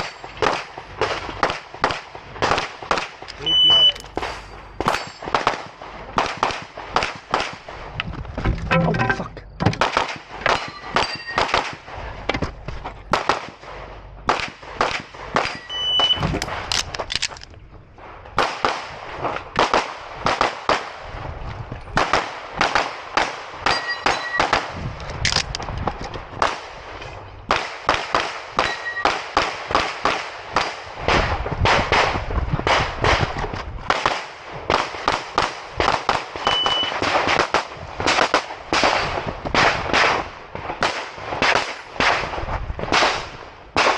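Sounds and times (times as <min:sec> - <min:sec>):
high ringing tones: 0:03.4 - 0:05.3, 0:08.7 - 0:09.6, 0:10.6 - 0:11.5, 0:15.6 - 0:16.3, 0:23.7 - 0:24.5, 0:28.6 - 0:29.2, 0:36.5 - 0:37.0
handgun firing rapid shots: 0:03.9 - 0:07.7, 0:14.3 - 0:17.4, 0:27.5 - 0:32.1.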